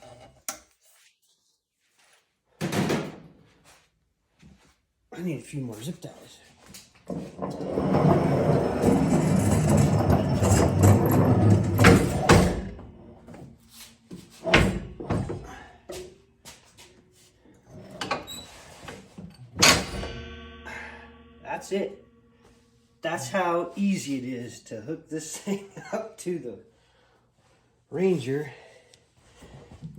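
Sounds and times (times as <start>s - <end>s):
rustling and scraping of parts: 6.5s - 21.4s
sharp knocks: 19.6s - 22.6s
plucked guitar music: 20.1s - 23.0s.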